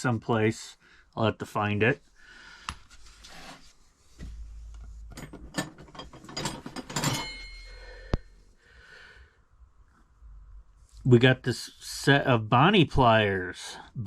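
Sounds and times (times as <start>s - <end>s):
metal hand tools clicking and rattling: 5.2s - 7.8s
ringing metal clink: 6.3s - 8.2s.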